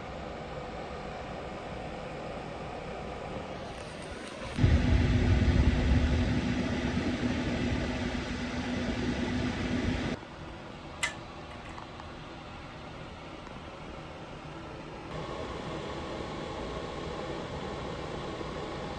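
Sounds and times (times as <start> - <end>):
small electric motor humming: 3.6 - 5.7.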